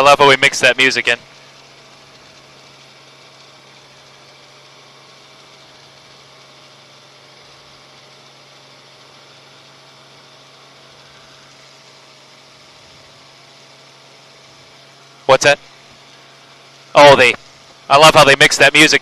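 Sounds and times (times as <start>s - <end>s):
helicopter engine and rotors drone: 0.0s - 19.0s.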